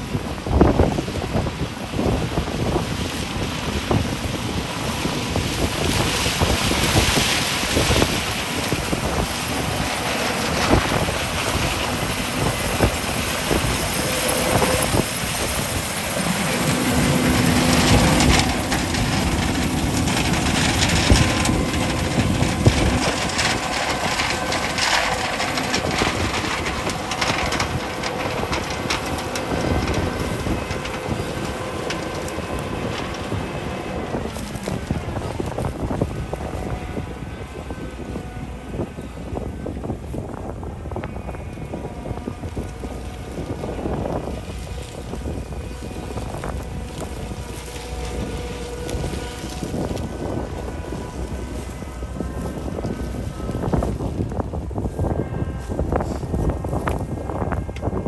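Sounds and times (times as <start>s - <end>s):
harvest machinery engine rumble: 0.0s - 58.0s
rattles and clicks: 4.8s - 37.0s.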